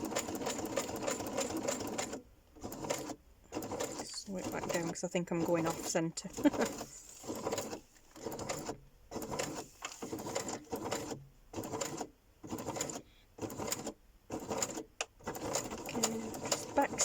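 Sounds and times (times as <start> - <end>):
sewing machine stitching paper: 0.0 - 17.0.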